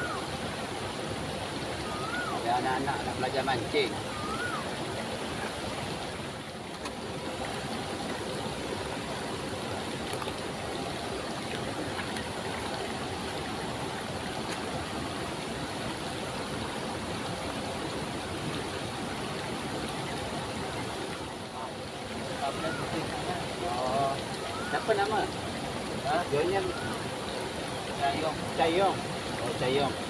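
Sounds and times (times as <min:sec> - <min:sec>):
waterfall rushing: 0:00.0 - 0:30.0.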